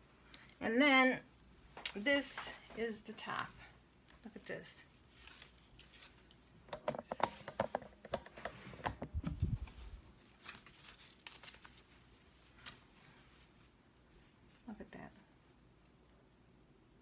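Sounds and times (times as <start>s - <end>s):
garment rustling: 1.7s - 14.7s.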